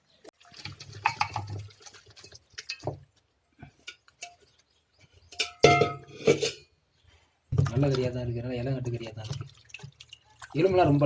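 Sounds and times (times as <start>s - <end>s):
wet mouth and mixing sounds: 0.4s - 4.6s, 8.8s - 10.7s
plate clinks: 5.4s - 6.6s.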